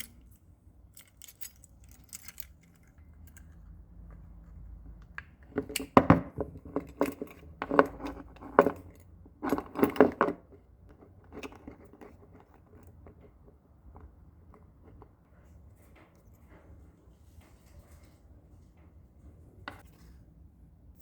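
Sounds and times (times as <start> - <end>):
keys clicking and clinking: 0.0 - 4.6, 5.4 - 10.4.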